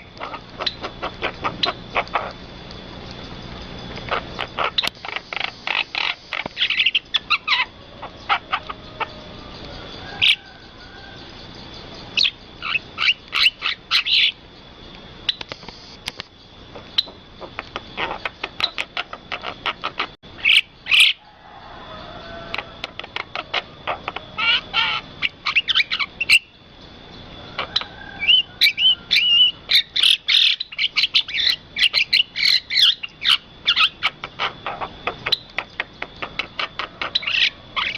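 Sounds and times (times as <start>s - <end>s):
starling chirping: 0.0s - 37.9s.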